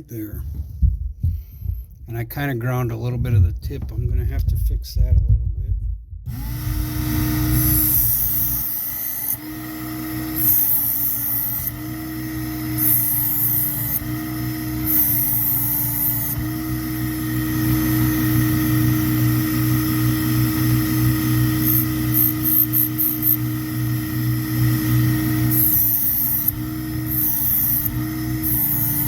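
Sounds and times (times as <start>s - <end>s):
belt sharpener motor running: 6.3s - 29.0s.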